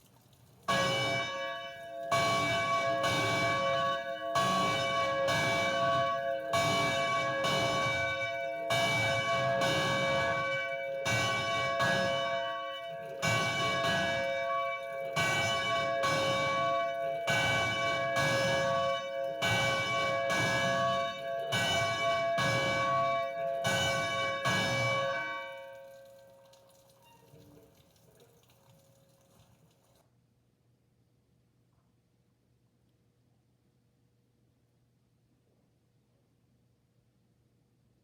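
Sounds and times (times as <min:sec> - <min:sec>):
church bell ringing: 0:00.7 - 0:26.2.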